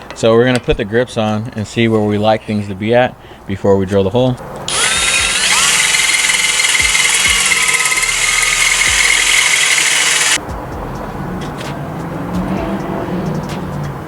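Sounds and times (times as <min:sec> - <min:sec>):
power drill whining: 0:04.7 - 0:10.4.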